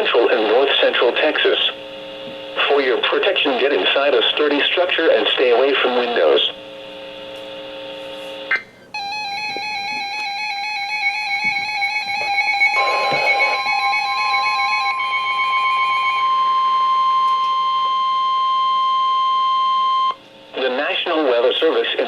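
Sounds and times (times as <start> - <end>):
steady alarm tone: 8.5 - 22.0
warbling electronic beep: 11.8 - 17.9.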